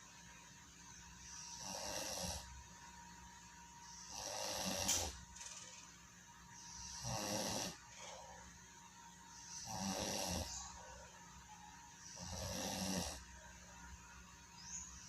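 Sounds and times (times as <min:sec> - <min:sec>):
person snoring: 0:01.4 - 0:02.5, 0:04.0 - 0:05.2, 0:06.7 - 0:08.2, 0:09.6 - 0:10.5, 0:12.1 - 0:13.3
quiet breathing: 0:07.7 - 0:08.6.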